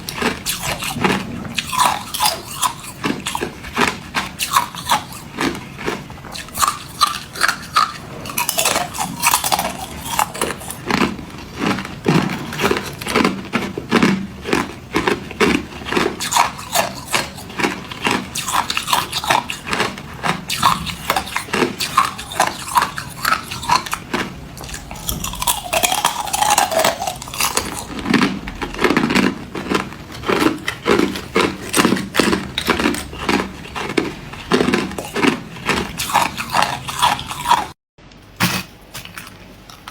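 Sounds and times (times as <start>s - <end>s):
ice being chewed: 0.0s - 37.8s, 38.4s - 39.9s.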